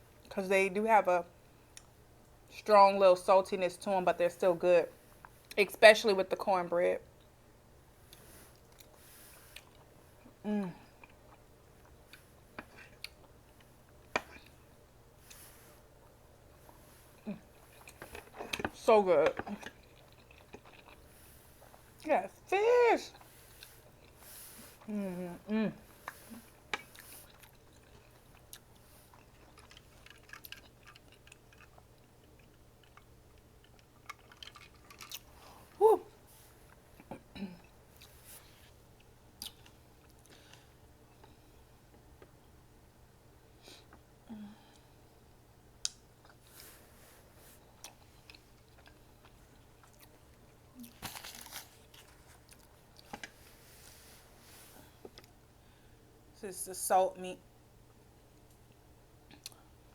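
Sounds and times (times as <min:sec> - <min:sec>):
person chewing food: 0:08.1 - 0:18.8, 0:19.4 - 0:22.1, 0:23.1 - 0:42.2, 0:45.8 - 0:53.9, 0:58.4 - 0:59.7.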